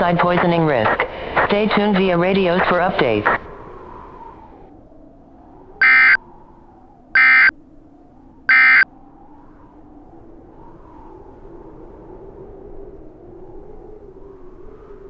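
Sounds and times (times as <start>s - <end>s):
faint wavering drone: 3.5s - 15.0s
digital data tone bursts: 5.8s - 6.2s, 7.2s - 7.5s, 8.5s - 8.9s.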